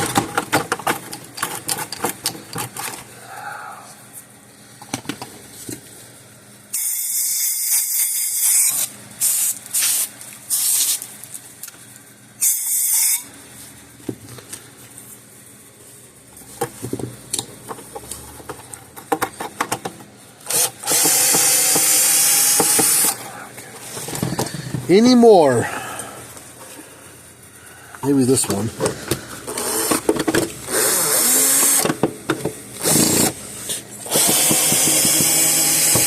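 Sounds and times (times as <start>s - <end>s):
handling clicks and knocks: 16.6s - 20.1s
power drill whirring: 20.5s - 23.2s, 29.5s - 30.0s, 30.7s - 31.8s, 32.8s - 33.4s, 34.0s - 36.0s.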